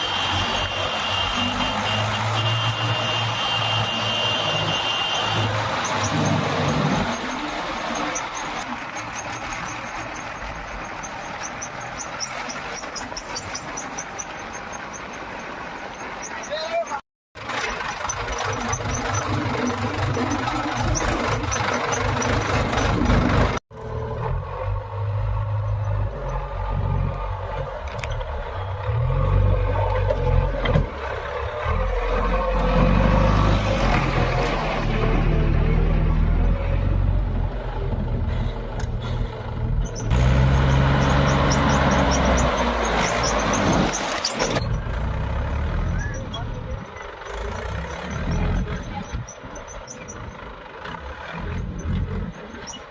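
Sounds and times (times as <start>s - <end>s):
diesel engine running: 17.4s - 52.7s.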